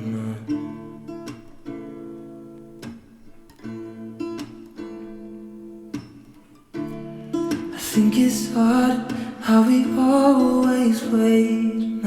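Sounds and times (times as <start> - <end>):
person singing: 0.0 - 0.9, 7.6 - 12.0
strummed acoustic guitar: 0.0 - 12.0.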